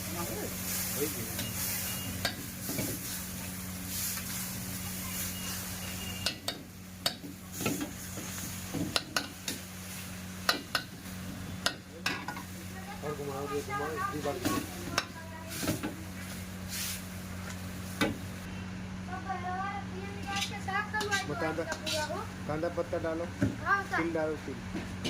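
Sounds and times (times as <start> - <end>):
chicken sizzling in a pan: 0.0 - 18.4.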